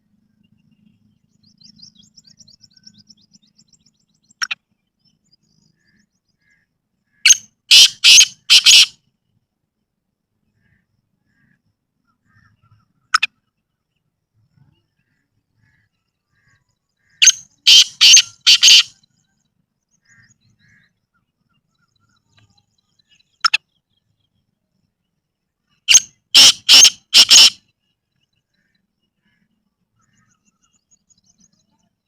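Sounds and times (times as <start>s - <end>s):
bird harsh calling: 5.8s - 9.0s, 15.0s - 19.0s, 25.7s - 27.7s.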